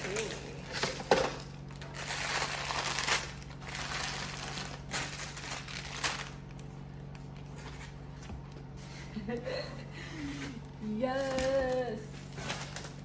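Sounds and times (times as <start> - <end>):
packaging rustling and crinkling: 0.0 - 8.5.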